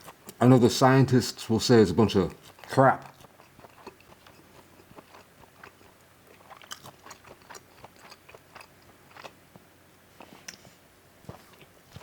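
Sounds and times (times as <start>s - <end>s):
chewing mouth clicks: 2.4s - 9.4s.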